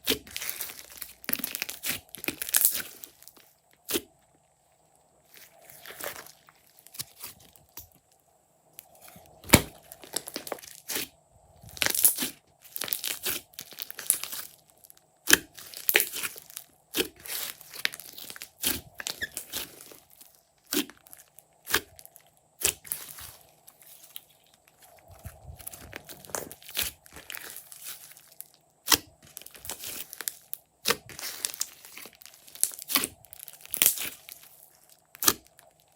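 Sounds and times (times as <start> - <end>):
slime squished by hand: 15.2 - 24.2, 24.8 - 34.5, 35.1 - 35.6.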